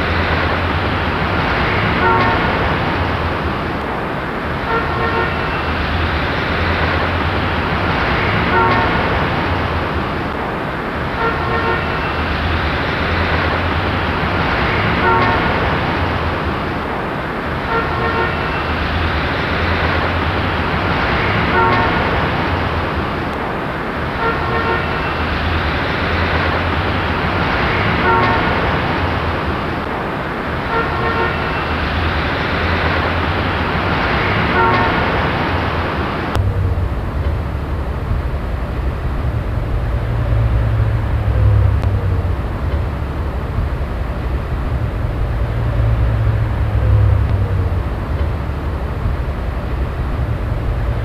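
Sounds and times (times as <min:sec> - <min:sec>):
passing vehicles roar: 0:00.0 - 0:51.0
car horn honks: 0:01.6 - 0:03.4, 0:04.6 - 0:05.8, 0:08.2 - 0:09.8, 0:11.1 - 0:12.2, 0:14.8 - 0:16.4, 0:17.6 - 0:18.8, 0:21.2 - 0:22.9, 0:24.1 - 0:25.3, 0:27.8 - 0:29.4, 0:30.6 - 0:31.8, 0:34.4 - 0:36.4.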